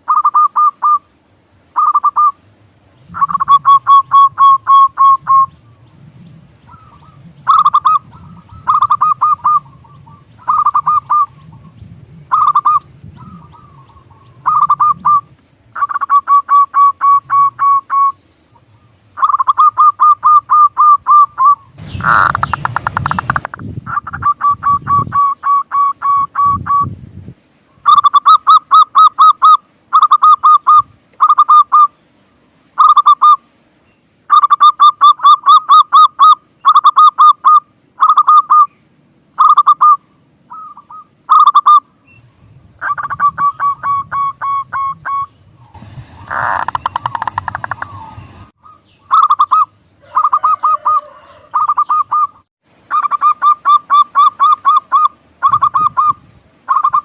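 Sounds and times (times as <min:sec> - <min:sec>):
dove staccato cooing: 0:06.7 - 0:26.7, 0:46.2 - 0:57.0.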